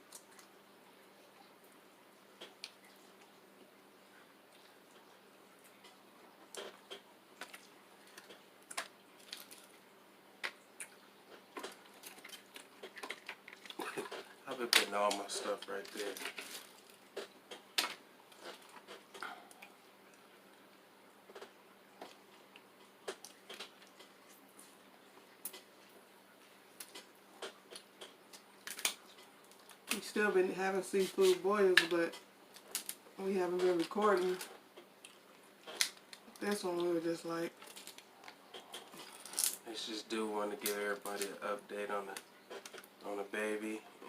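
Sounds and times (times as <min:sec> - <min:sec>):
food being chewed: 0:04.5 - 0:09.8, 0:10.4 - 0:14.5, 0:15.3 - 0:20.3, 0:21.3 - 0:29.9, 0:34.4 - 0:36.4, 0:37.5 - 0:39.6
shells cracking while eating: 0:05.8 - 0:09.8, 0:10.4 - 0:20.2, 0:21.3 - 0:24.4, 0:26.7 - 0:30.0, 0:31.8 - 0:36.6, 0:37.5 - 0:39.7, 0:42.1 - 0:43.0.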